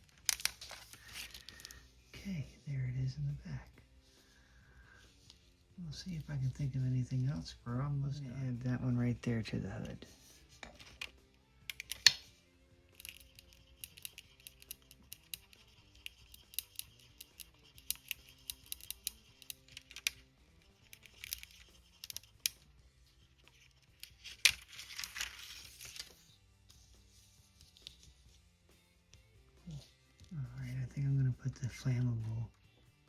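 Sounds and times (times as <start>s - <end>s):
faint background music: 0.0s - 33.0s.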